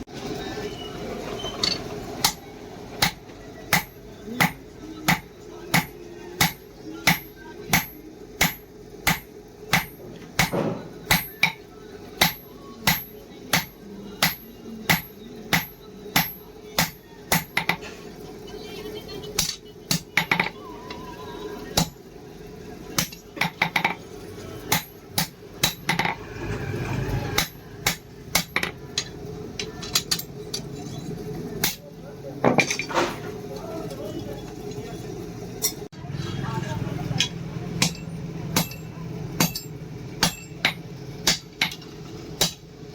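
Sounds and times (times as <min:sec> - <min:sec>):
hammer ringing on steel anvil: 0:37.8 - 0:41.8.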